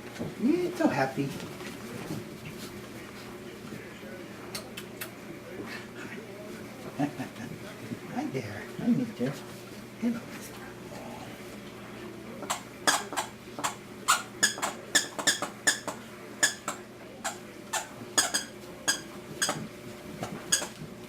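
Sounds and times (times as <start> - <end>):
puppies squeaking: 12.4 - 20.8.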